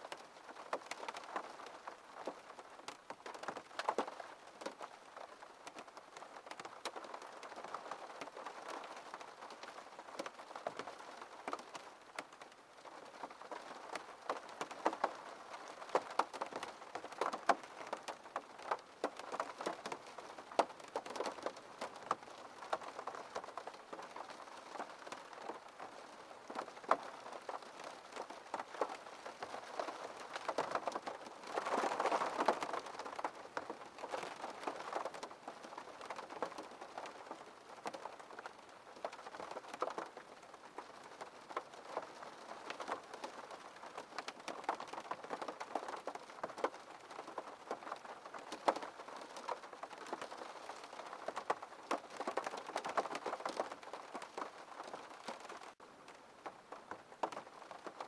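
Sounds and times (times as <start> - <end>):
rain on a window pane: 0.0 - 58.0.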